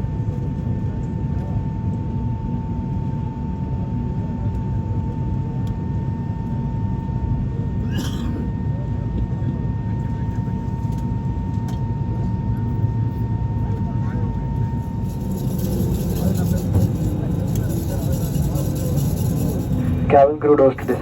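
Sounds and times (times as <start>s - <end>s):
airliner engine rumble: 0.0s - 21.0s
high engine whine: 13.6s - 21.0s.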